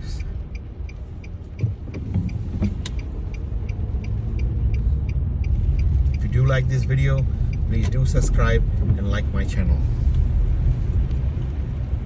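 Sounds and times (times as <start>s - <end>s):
car engine and tyre rumble: 0.0s - 12.0s
turn signal ticking: 0.0s - 12.0s.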